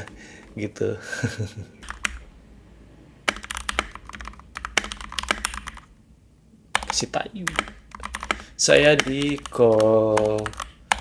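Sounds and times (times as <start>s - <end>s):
mechanical keyboard typing: 1.8s - 2.2s, 3.3s - 5.9s, 6.8s - 11.0s.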